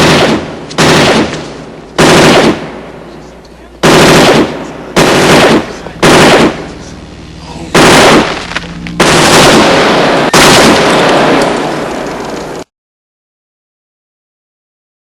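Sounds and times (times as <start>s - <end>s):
machine gun automatic fire: 0.0s - 2.7s, 3.8s - 6.8s, 7.7s - 12.6s
gunfire echo: 0.0s - 3.2s, 3.8s - 7.0s, 7.7s - 12.6s.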